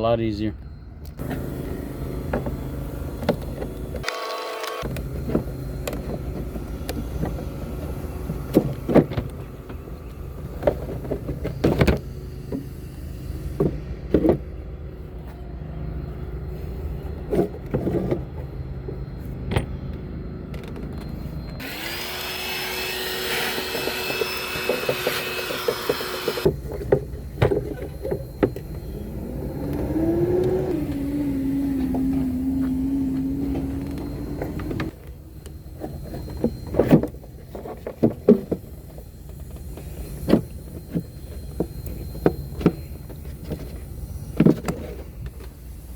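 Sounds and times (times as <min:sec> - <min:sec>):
small electric motor running: 0:04.0 - 0:05.9, 0:21.6 - 0:26.5, 0:28.6 - 0:35.0
hand tools clicking and knocking: 0:23.2 - 0:28.8.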